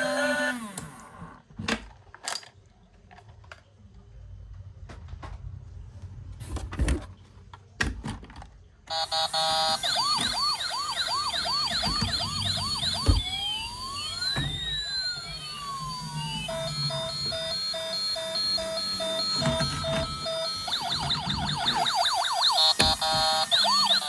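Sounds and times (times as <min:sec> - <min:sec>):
toy electronic siren: 0:00.0 - 0:01.2, 0:08.9 - 0:24.0.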